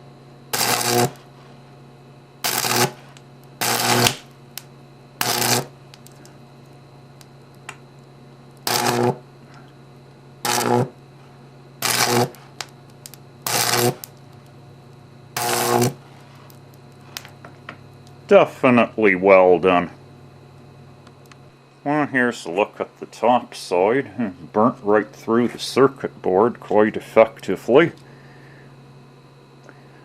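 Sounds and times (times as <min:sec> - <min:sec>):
buzzing electrical arcs: 0:00.0 - 0:01.7, 0:02.4 - 0:09.8, 0:10.4 - 0:20.0
faint steady hum: 0:00.0 - 0:30.0.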